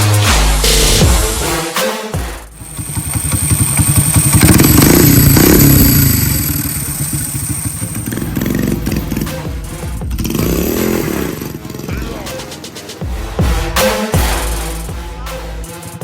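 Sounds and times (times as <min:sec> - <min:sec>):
small engine revving: 0:02.5 - 0:12.0
steady high whine: 0:02.6 - 0:10.1.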